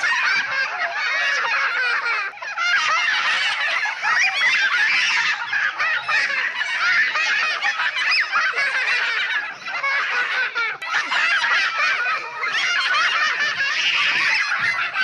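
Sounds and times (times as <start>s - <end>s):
flock of birds calling: 0.0s - 15.0s.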